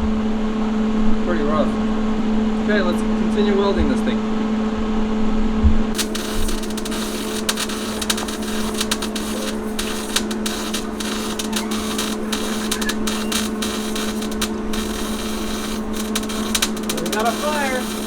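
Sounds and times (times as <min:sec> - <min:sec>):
welder arc crackling: 0:05.9 - 0:18.0
steady hum: 0:06.0 - 0:18.0.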